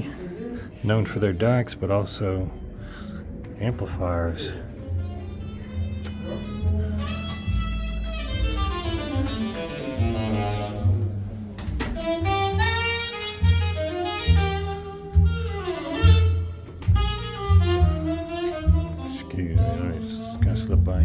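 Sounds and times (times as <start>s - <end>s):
saxophone melody: 4.7s - 20.7s
plucked double bass: 5.0s - 21.0s.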